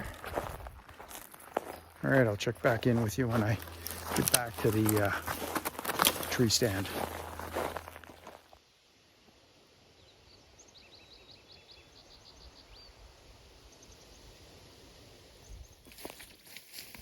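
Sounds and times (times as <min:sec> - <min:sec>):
footsteps: 0:00.0 - 0:08.6.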